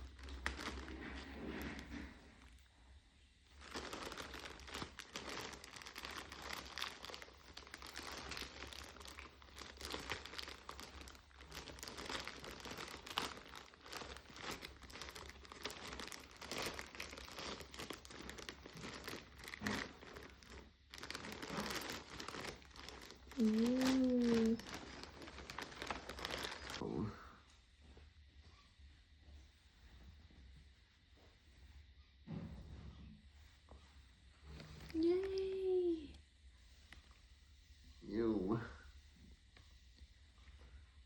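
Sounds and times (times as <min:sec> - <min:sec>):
packaging tearing: 0:00.0 - 0:01.9, 0:03.6 - 0:26.8
packaging crinkling and rustling: 0:00.0 - 0:02.6, 0:03.5 - 0:26.8.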